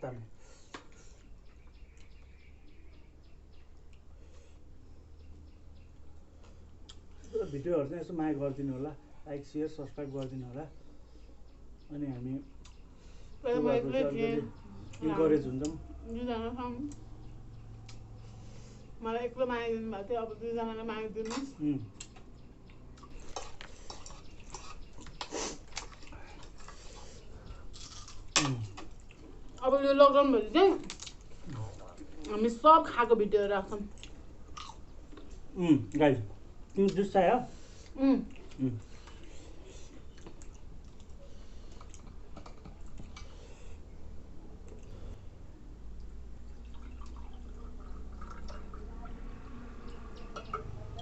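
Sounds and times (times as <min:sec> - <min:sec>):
low steady hum: 0:00.0 - 0:51.0
chewing and crunching: 0:21.3 - 0:29.6, 0:30.8 - 0:32.4, 0:33.8 - 0:35.6, 0:37.8 - 0:43.4.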